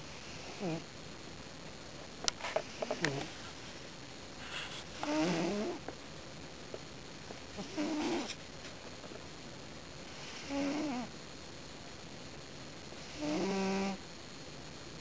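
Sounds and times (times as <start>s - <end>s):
cat snoring: 0.0s - 0.9s, 5.0s - 5.8s, 7.6s - 8.4s, 10.1s - 11.1s, 13.0s - 14.0s.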